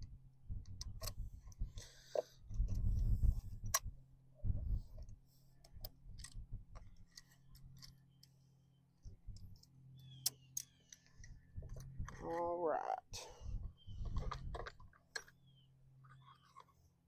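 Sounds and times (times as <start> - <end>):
steady low hum: 0.0 - 16.4
muffled low rumble of handling: 0.0 - 17.0.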